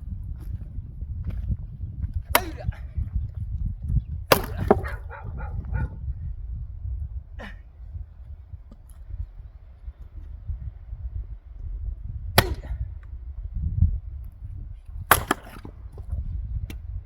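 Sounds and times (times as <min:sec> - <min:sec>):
low rumble: 0:00.0 - 0:15.1
axe splitting wood: 0:02.1 - 0:02.8, 0:04.3 - 0:05.4, 0:12.4 - 0:13.0, 0:15.0 - 0:16.8
wood clattering: 0:04.3 - 0:05.5.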